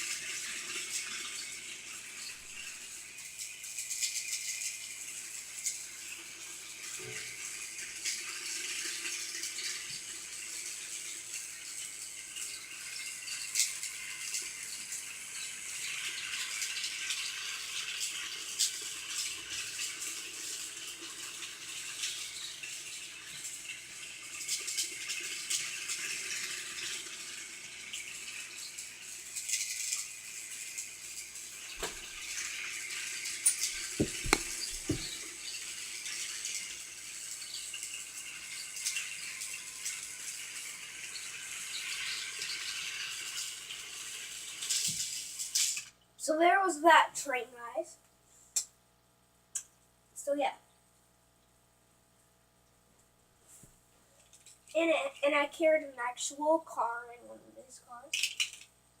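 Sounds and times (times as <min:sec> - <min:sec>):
toy train rattling on track: 0:00.0 - 0:45.9, 0:58.1 - 0:58.7.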